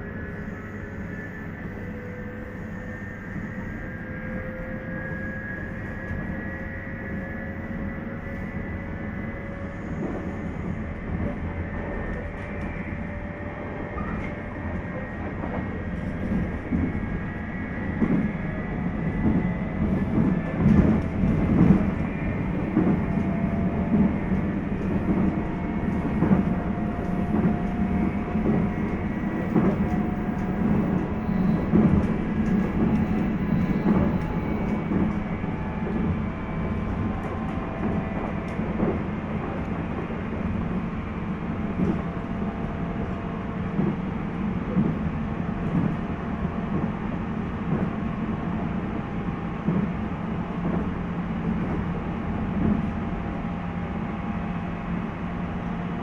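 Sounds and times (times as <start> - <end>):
train wheels rumbling on rail: 0.0 - 56.0
train motor and gear tones: 17.8 - 36.1.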